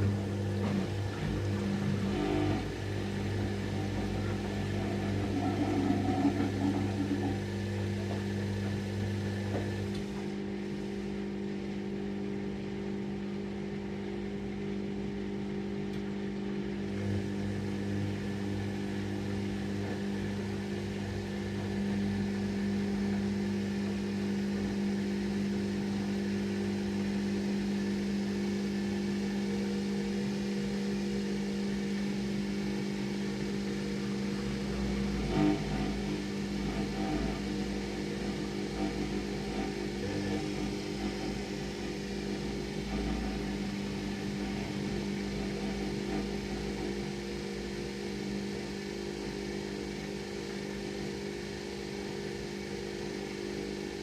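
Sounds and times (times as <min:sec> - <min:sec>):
lower hum: 0:00.0 - 0:11.8, 0:29.2 - 0:47.2
washing machine humming: 0:00.0 - 0:54.0.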